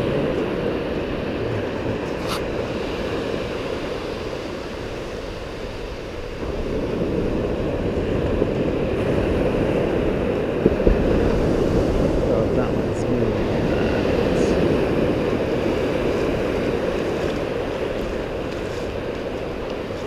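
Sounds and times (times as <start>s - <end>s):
ocean surf washing: 0.0s - 20.0s
wind rumbling on microphone: 0.0s - 20.0s.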